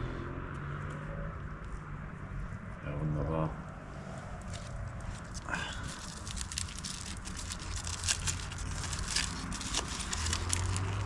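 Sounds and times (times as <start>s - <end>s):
campfire crackling: 4.4s - 11.0s
burning wood popping: 4.5s - 11.0s.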